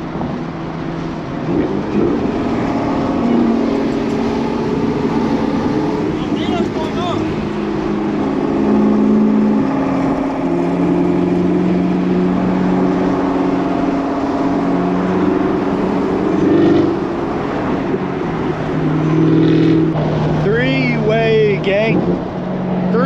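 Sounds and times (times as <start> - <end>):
car engine droning: 0.0 - 23.0
tyre and road noise: 0.0 - 23.0.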